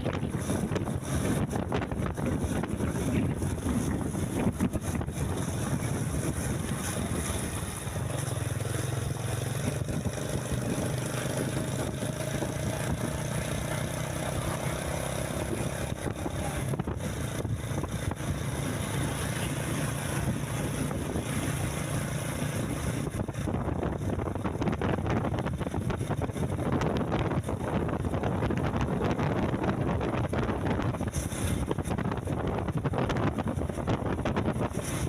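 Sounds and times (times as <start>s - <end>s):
bus engine droning: 0.0s - 35.0s.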